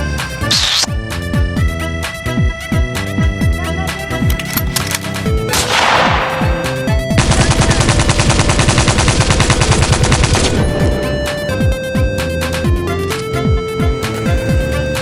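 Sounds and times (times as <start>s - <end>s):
electronic background music: 0.2s - 1.2s.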